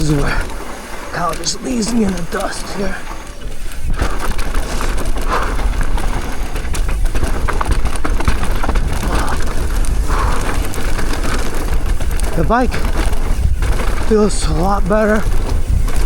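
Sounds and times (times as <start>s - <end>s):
bike rattles and knocks: 0.0s - 16.0s
tyres scrabbling on dirt: 0.0s - 16.0s
wind rumble on microphone: 3.4s - 16.0s.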